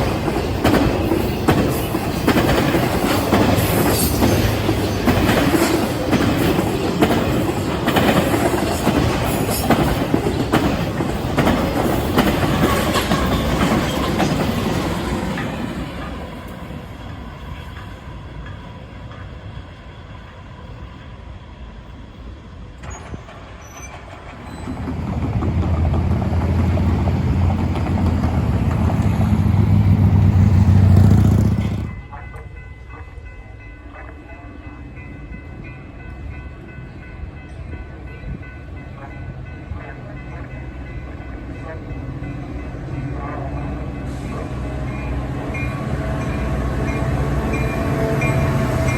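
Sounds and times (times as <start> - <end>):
train wheels clattering: 0.0 - 19.4, 22.8 - 32.9.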